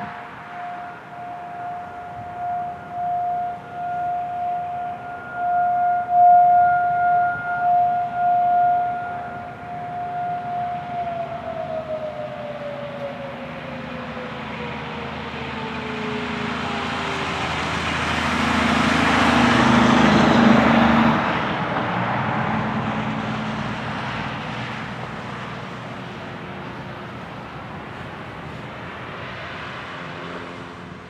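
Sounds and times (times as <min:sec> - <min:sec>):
siren winding down: 0:00.0 - 0:21.5
vehicle passing: 0:00.0 - 0:31.0.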